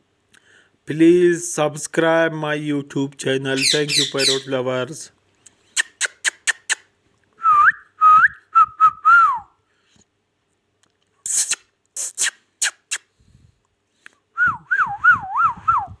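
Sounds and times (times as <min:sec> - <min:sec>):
parakeet sharp calls: 0:03.5 - 0:04.6
parakeet whistling: 0:03.6 - 0:04.5.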